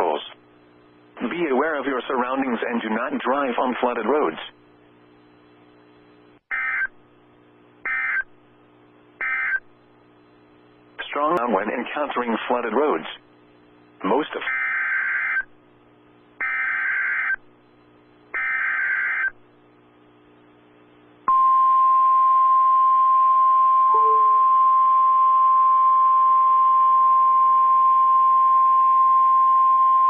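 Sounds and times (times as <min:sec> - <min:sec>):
steady single-pitch alert tone: 0:21.3 - 0:28.4.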